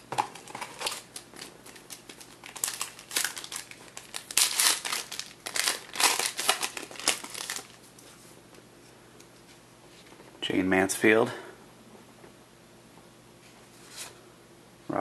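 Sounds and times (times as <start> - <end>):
wrapper crinkling: 0.2 - 7.8.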